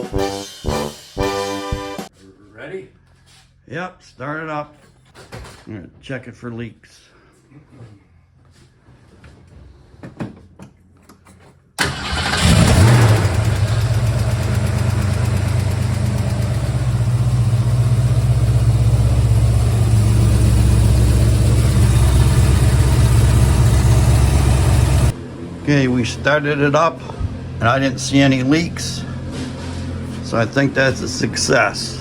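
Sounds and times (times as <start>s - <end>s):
car engine starting and idling: 11.8s - 32.0s.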